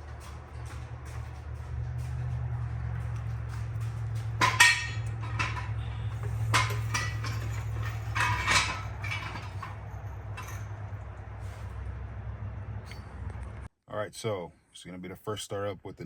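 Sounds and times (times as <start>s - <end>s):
steady low hum: 0.0s - 13.7s
metal objects clinking: 3.1s - 11.0s.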